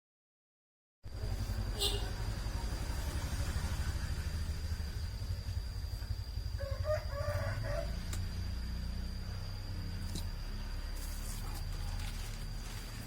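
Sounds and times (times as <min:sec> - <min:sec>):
rooster crowing: 0:06.4 - 0:08.4.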